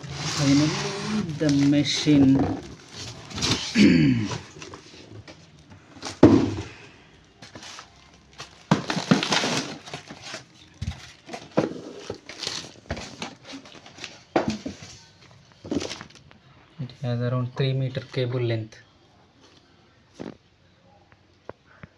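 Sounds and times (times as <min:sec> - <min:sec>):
packaging rustling and crackling: 0:00.0 - 0:16.5.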